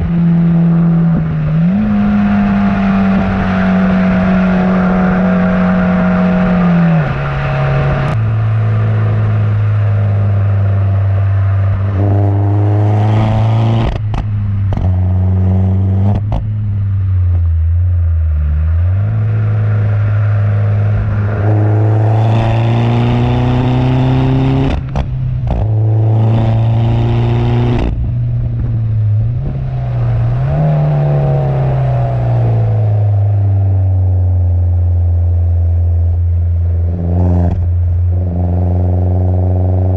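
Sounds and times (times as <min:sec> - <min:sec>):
car engine revving: 0:00.0 - 0:39.9
exhaust pops and bangs: 0:16.1 - 0:16.6.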